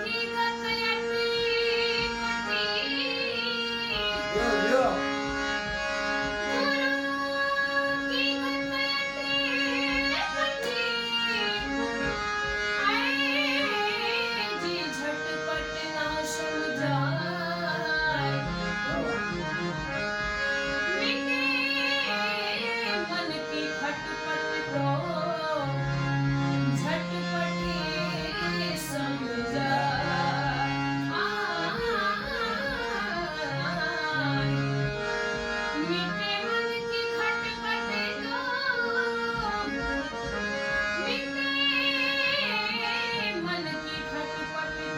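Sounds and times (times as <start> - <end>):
woman singing: 0.0 - 4.4, 6.5 - 11.7, 12.8 - 19.2, 20.9 - 25.8, 26.7 - 34.6, 35.8 - 40.4, 41.0 - 44.9.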